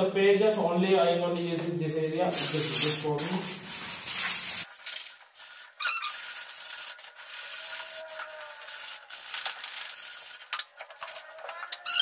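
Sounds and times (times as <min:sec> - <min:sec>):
sandpaper scratching on metal: 0:02.4 - 0:11.4.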